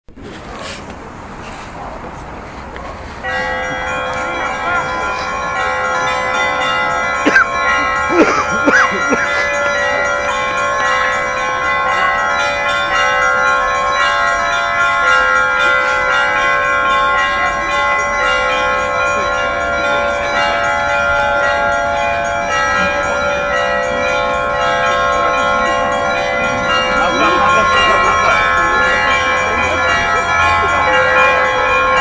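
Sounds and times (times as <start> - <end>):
church bells pealing: 0.2 - 32.0.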